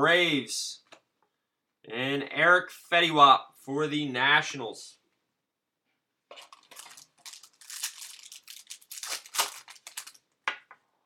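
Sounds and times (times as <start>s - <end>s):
cards and packaging rustling: 6.3s - 10.4s.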